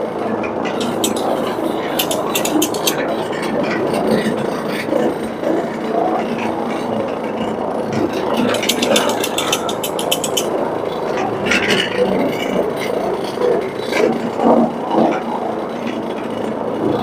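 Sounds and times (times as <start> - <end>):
fast run of clicks: 0.8 - 3.1, 8.3 - 10.6.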